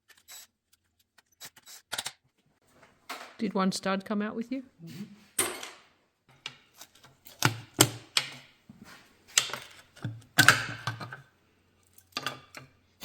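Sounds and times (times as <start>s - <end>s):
metal tools clattering: 5.4s - 12.8s.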